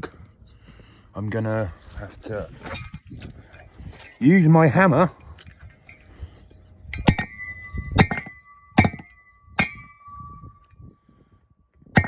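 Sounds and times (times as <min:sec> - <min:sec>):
hammer tapping with ringing tone: 0:06.9 - 0:10.8.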